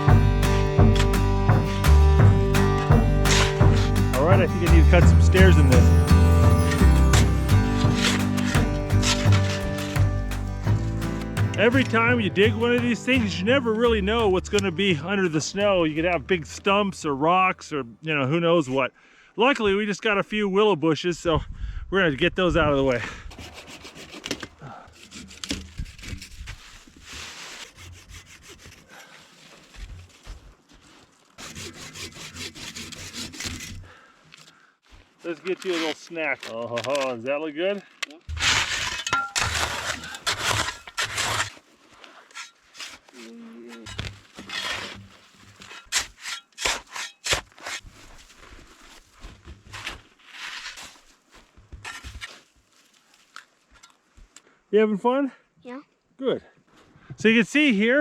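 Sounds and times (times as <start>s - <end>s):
hand saw cutting stems: 0.0s - 11.9s, 23.3s - 29.3s, 31.4s - 34.5s, 35.5s - 37.1s, 38.3s - 47.9s.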